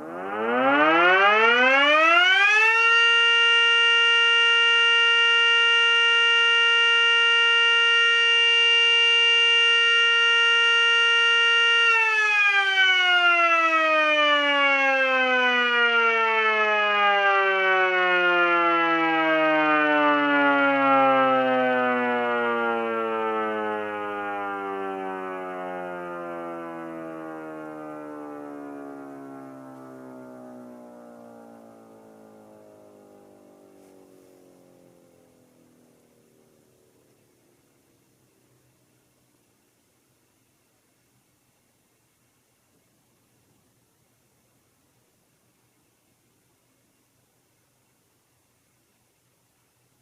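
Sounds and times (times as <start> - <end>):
siren wailing: 0.0 - 36.6.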